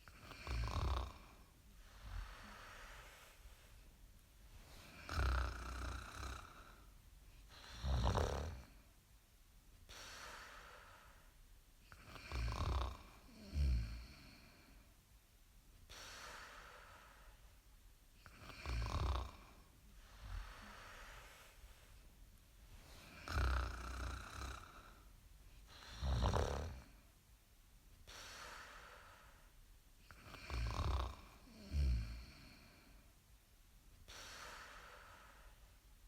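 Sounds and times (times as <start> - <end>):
loud low snores: 0.1 - 3.2, 4.8 - 6.8, 7.5 - 8.8, 11.9 - 14.6, 18.2 - 21.4, 23.0 - 25.0, 25.7 - 27.0, 30.2 - 32.9.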